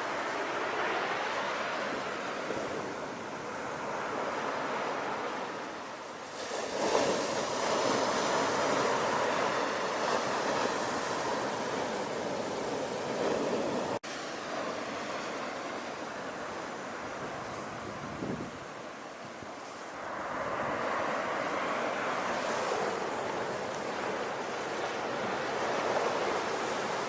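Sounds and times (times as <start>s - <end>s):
sea waves washing: 0.0s - 27.0s
wave breaking: 6.3s - 15.8s.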